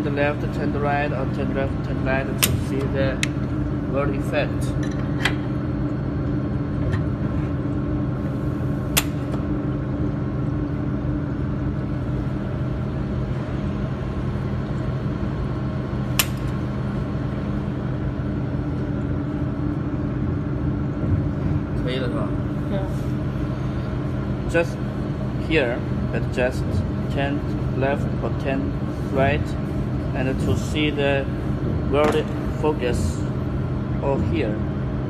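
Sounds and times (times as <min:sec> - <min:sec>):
welding machine humming: 0:00.0 - 0:35.0.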